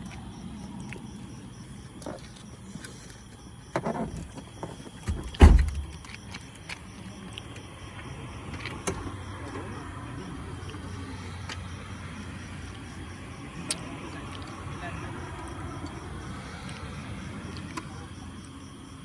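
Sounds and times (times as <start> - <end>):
heavy low thump: 5.1 - 5.9.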